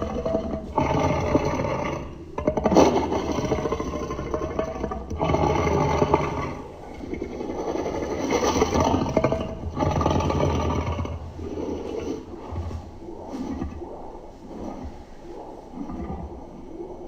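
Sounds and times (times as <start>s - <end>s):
deep rough dinosaur growls: 0.0s - 13.9s.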